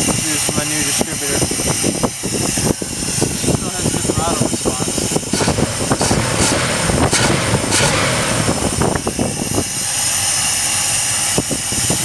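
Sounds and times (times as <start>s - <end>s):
engine revving and misfiring: 2.7s - 10.8s.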